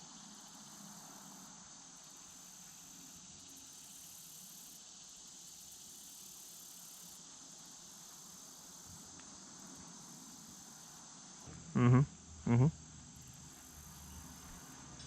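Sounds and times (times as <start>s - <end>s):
soft even hiss: 0.0s - 11.7s
high-pitched insect chorus: 0.0s - 11.9s, 13.0s - 15.0s.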